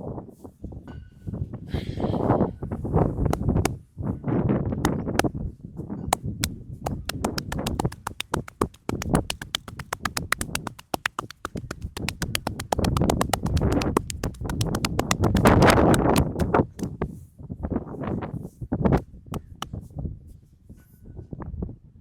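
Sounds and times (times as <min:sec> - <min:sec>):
hands tapping on a head: 0:06.9 - 0:16.9.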